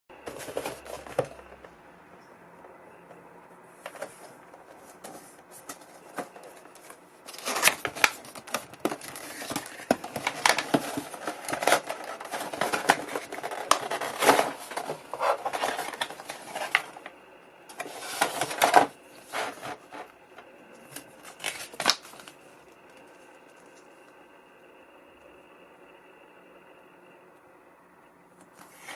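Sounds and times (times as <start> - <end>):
packaging rustling and crinkling: 0.3 - 1.7, 3.8 - 17.1, 17.7 - 24.0.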